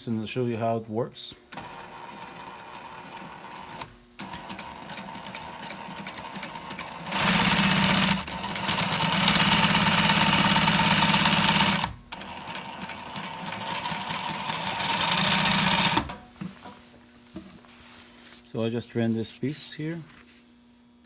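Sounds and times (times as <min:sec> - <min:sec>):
sewing machine stitching: 0:01.5 - 0:16.1.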